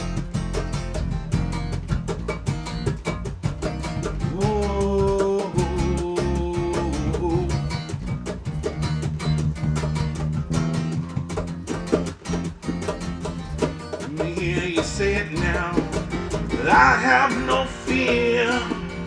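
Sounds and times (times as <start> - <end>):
lead guitar: 0.0 - 19.0
rock band playing: 0.0 - 19.0.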